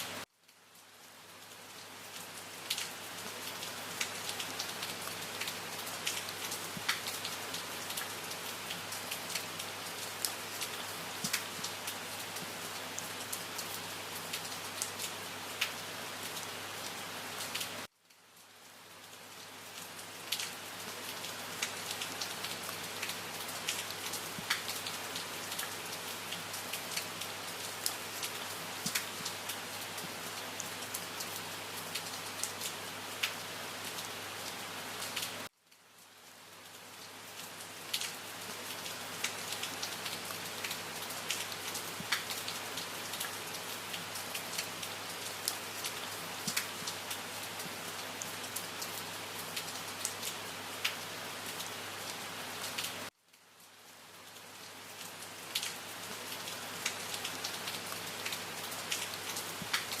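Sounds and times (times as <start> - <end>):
steady rain: 0.0 - 60.0
raindrops tapping close by: 3.6 - 9.5, 21.6 - 25.7, 28.8 - 30.2, 45.4 - 47.8, 56.8 - 60.0.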